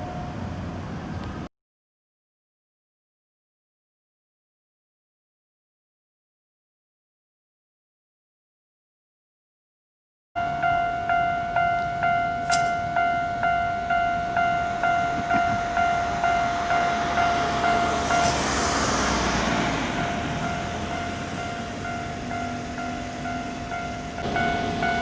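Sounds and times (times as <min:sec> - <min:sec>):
level crossing bell ringing: 0:10.4 - 0:25.0
train passing: 0:10.4 - 0:25.0.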